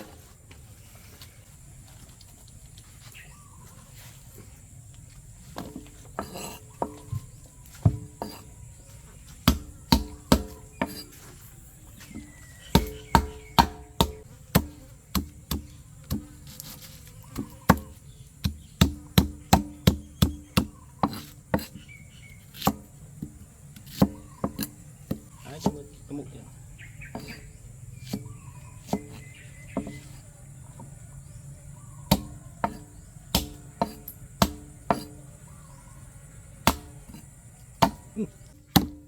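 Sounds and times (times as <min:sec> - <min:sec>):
knife chopping on wooden board: 0:05.6 - 0:08.5, 0:09.3 - 0:11.2, 0:12.0 - 0:21.9, 0:22.5 - 0:25.9, 0:27.0 - 0:30.2, 0:32.1 - 0:35.2, 0:36.6 - 0:39.0.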